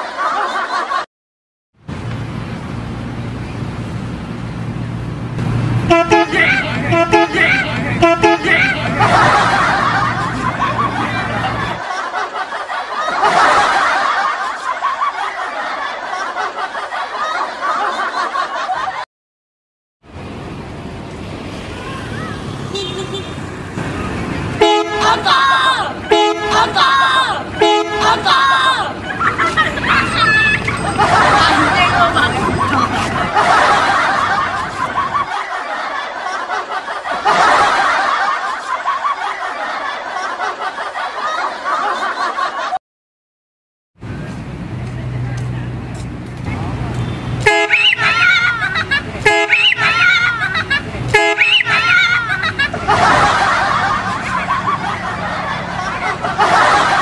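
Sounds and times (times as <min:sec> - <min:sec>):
people laughing together: 0:00.0 - 0:01.1, 0:06.1 - 0:19.1, 0:24.8 - 0:42.8, 0:47.4 - 0:57.0.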